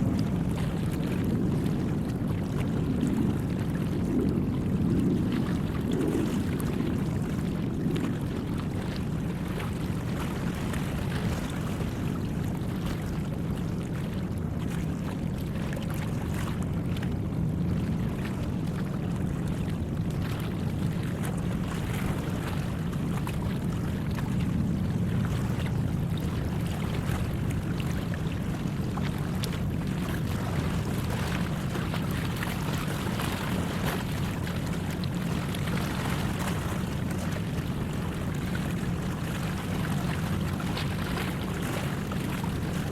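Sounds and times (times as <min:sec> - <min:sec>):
boat engine rumbling: 0:00.0 - 0:42.9
wind: 0:00.0 - 0:42.9.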